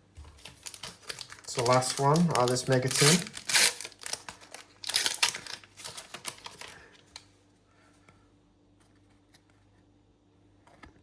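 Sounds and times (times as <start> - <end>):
cards and foil wrapper rustling: 0.2 - 7.2.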